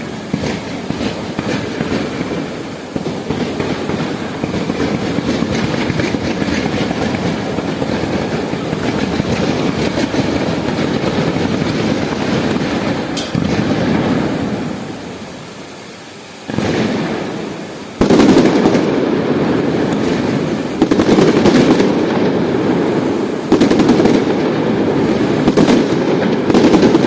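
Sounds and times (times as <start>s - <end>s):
fireworks barrage: 0.0s - 27.0s.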